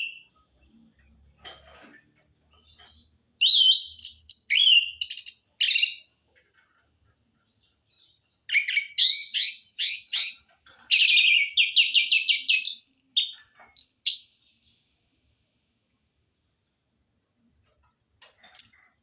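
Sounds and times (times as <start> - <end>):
songbird singing: 0.0 - 1.2, 2.4 - 6.6, 7.2 - 15.3, 17.6 - 19.0.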